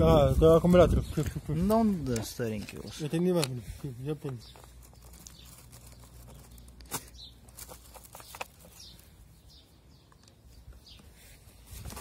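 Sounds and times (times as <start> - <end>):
high bird chirps: 4.4 - 11.2.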